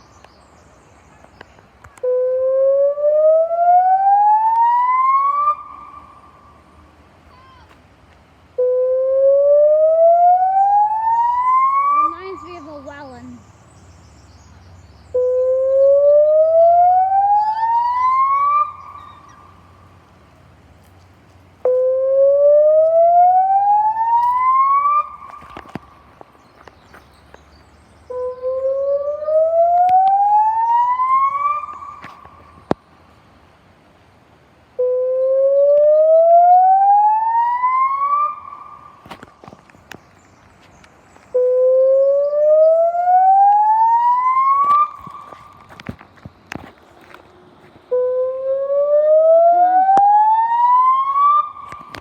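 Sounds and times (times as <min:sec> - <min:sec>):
rising warning siren whoop: 0:02.0 - 0:06.2, 0:08.6 - 0:12.6, 0:15.2 - 0:19.6, 0:21.6 - 0:25.8, 0:28.1 - 0:32.2, 0:34.8 - 0:39.0, 0:41.4 - 0:45.4, 0:47.9 - 0:52.0.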